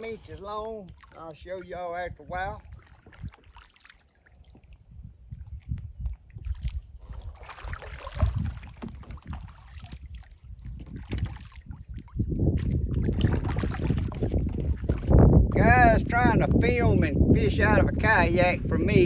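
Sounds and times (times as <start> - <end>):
low wind rumble on microphone: 0.0 - 3.6, 4.3 - 19.0
bumps and knocks on kayak: 7.4 - 11.6, 12.6 - 15.6.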